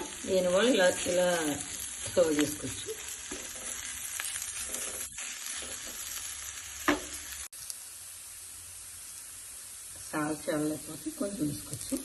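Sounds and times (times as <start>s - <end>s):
stirring in a pan: 0.0s - 7.4s
vegetables sizzling in a pan: 0.0s - 12.0s.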